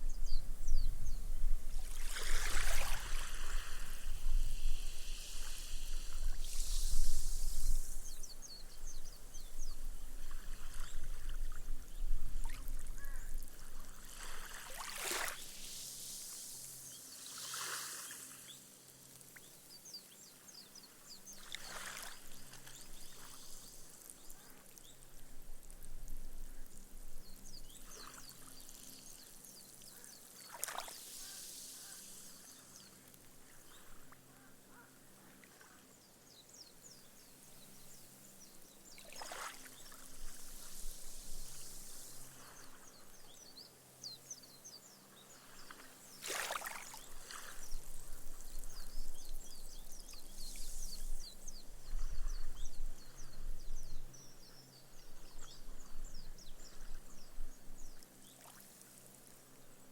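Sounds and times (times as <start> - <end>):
waves lapping on sand: 1.8 - 8.4, 10.2 - 19.4, 21.4 - 25.8, 27.8 - 34.3, 38.8 - 43.5, 45.2 - 48.9.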